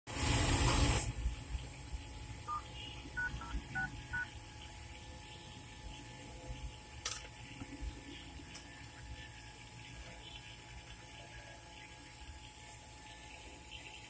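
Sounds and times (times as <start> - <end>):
dual-tone keypad beeps: 2.5 - 4.3.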